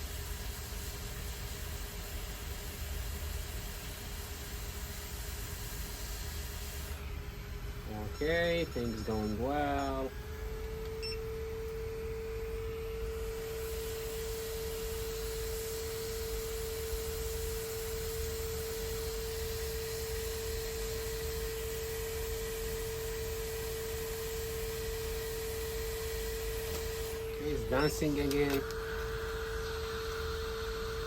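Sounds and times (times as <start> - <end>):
hiss: 3.4 - 6.9, 13.4 - 22.8.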